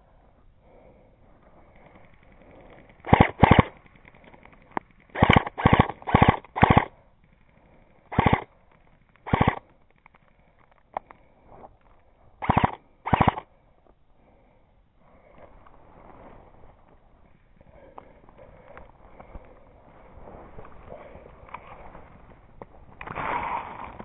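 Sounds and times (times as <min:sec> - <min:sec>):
gun clicks: 0:01.8 - 0:07.0, 0:08.1 - 0:11.3, 0:12.4 - 0:13.5
airsoft gun firing bursts: 0:03.0 - 0:04.0, 0:05.1 - 0:07.0, 0:08.1 - 0:08.5, 0:09.2 - 0:09.7, 0:12.4 - 0:13.5.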